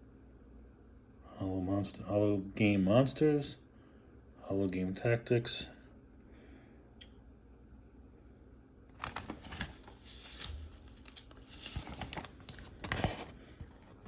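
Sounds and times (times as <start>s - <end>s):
magazine pages rustling: 8.9s - 14.0s.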